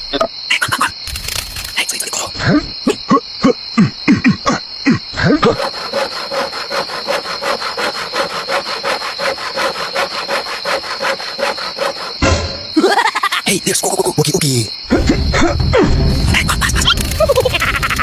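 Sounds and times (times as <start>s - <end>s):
saw cutting through wood: 5.4s - 12.2s.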